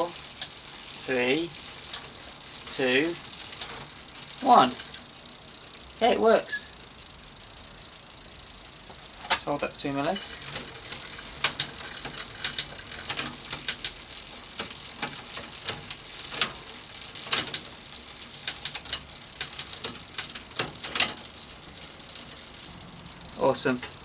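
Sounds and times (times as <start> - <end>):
bicycle freewheel ticking: 0.0 - 24.0
bicycle shifter clicking: 1.6 - 24.0.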